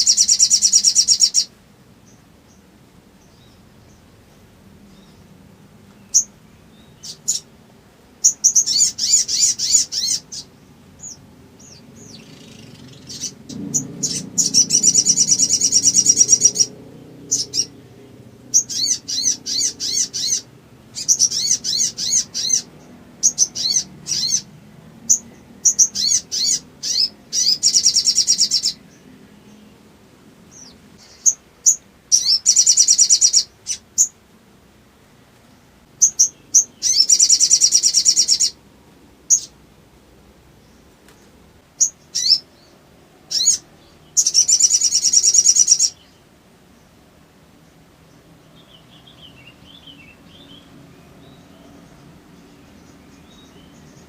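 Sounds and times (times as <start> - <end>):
bird calling in rapid high chipping notes: 0.0 - 2.6, 8.2 - 17.8, 18.4 - 24.5, 25.1 - 29.7, 30.5 - 34.2, 36.0 - 38.6, 39.3 - 39.6, 41.8 - 46.2.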